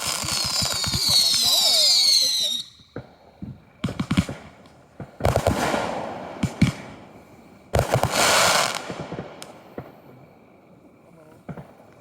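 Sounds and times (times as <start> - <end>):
fireworks banging: 0.0 - 10.3
fireworks crackling: 0.0 - 12.0.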